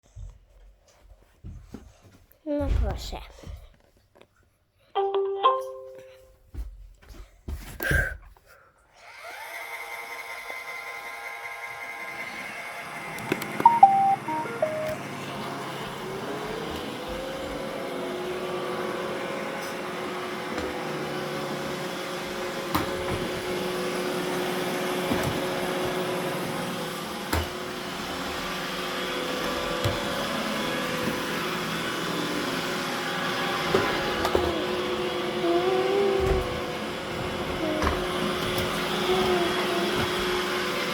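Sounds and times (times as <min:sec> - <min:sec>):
robot vacuum humming: 0:09.0 - 0:40.9.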